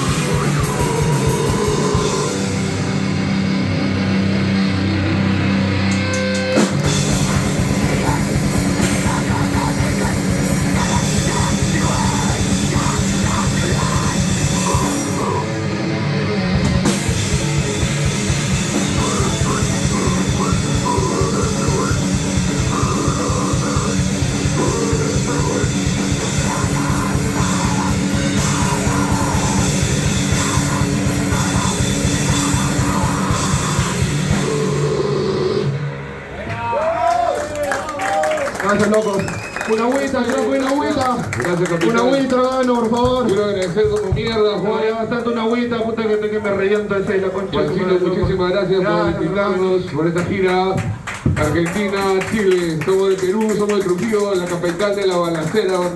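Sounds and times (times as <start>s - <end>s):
very fast dense drumming: 0.0s - 4.3s, 6.0s - 15.5s, 16.6s - 35.5s, 39.8s - 44.5s, 50.1s - 55.9s
distorted guitar and bass: 0.0s - 37.7s, 41.8s - 55.9s.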